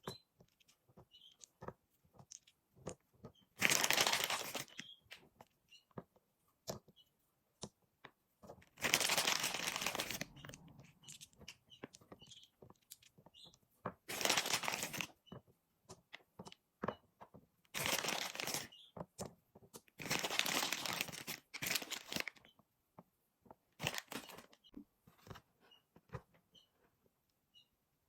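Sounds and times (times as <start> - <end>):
candies clicking and tapping: 0.0 - 24.7
packaging crinkling and tearing: 3.6 - 4.8, 8.8 - 11.3, 14.1 - 15.1, 17.8 - 18.7, 20.0 - 22.4, 23.8 - 24.6.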